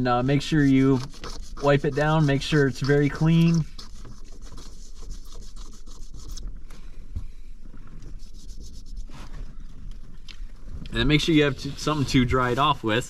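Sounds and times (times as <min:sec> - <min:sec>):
wipe rubbing on glass: 0:00.0 - 0:06.5, 0:08.1 - 0:09.5, 0:11.1 - 0:13.0.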